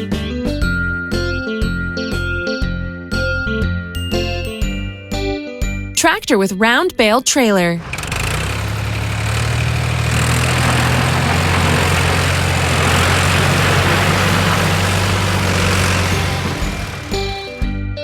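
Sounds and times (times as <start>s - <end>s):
tractor engine running: 7.8s - 17.7s.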